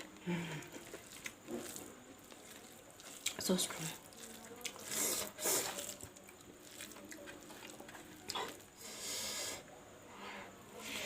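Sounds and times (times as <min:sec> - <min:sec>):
wet chewing and smacking: 0:00.0 - 0:08.7
airy breath hiss: 0:08.8 - 0:11.0.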